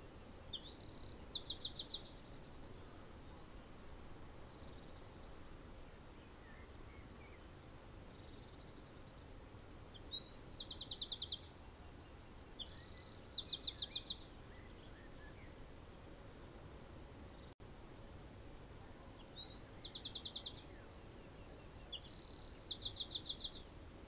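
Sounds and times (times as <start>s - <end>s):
songbird singing trills: 0.0s - 3.7s, 8.1s - 15.6s, 18.8s - 23.9s
outdoor background hiss: 0.0s - 24.0s.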